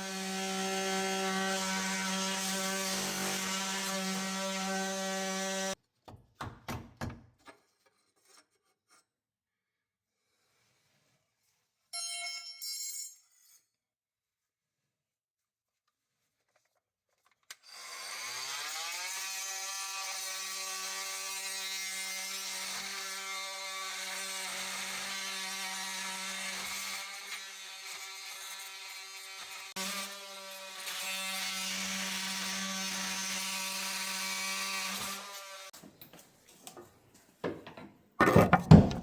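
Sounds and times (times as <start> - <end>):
power tool cutting wood: 0.0 - 5.8, 17.6 - 35.8.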